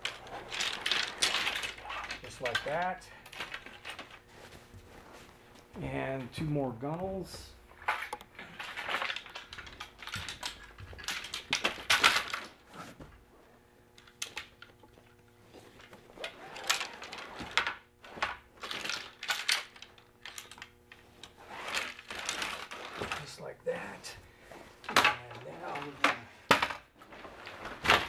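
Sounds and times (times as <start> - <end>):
frame pieces clicking and clattering: 0.0 - 4.2, 7.8 - 12.6, 14.0 - 23.4, 24.8 - 28.0.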